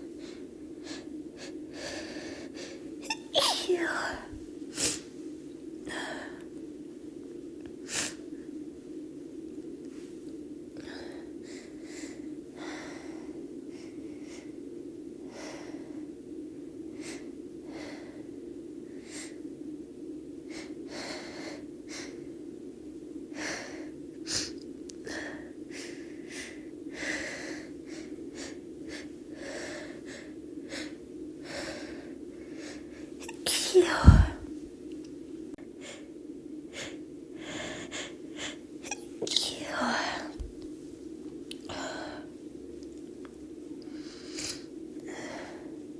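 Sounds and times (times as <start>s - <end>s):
woman sneezing: 3.0s - 4.2s, 33.2s - 34.5s
woman breathing and sniffing: 23.3s - 34.8s, 35.6s - 40.6s, 43.8s - 45.9s.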